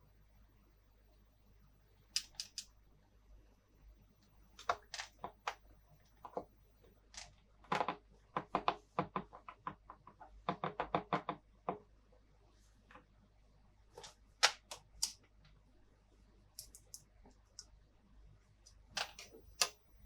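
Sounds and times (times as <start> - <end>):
plastic toy pieces clicking: 2.2 - 2.7, 16.6 - 17.0.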